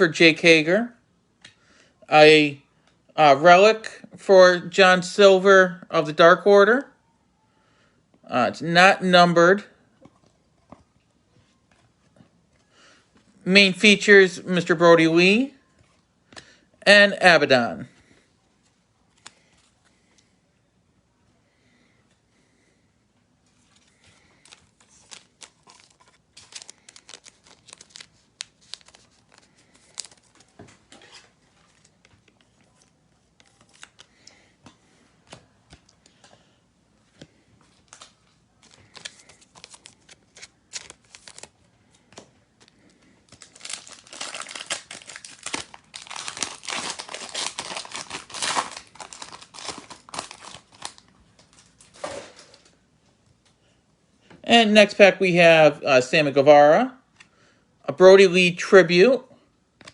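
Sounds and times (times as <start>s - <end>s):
trading cards clicking and rustling: 23.6s - 36.3s, 37.1s - 52.7s
plastic wrapper tearing and crinkling: 23.9s - 34.2s, 37.8s - 41.6s, 42.6s - 52.7s.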